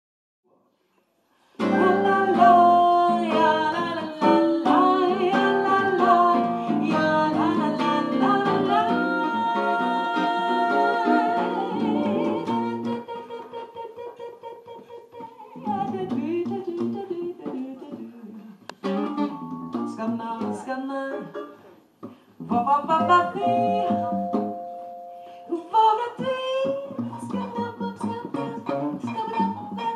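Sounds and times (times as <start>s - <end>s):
plucked guitar: 1.6s - 13.6s, 15.6s - 29.9s
live band playing: 4.2s - 12.9s, 18.8s - 20.6s, 23.0s - 25.7s.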